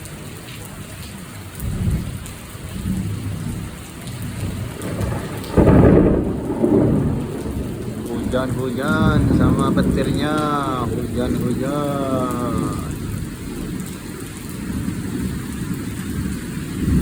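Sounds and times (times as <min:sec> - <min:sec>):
steady rain: 0:00.0 - 0:17.0
loud thunderclap: 0:01.6 - 0:13.9, 0:14.6 - 0:17.0
thunder rumbling: 0:01.6 - 0:17.0.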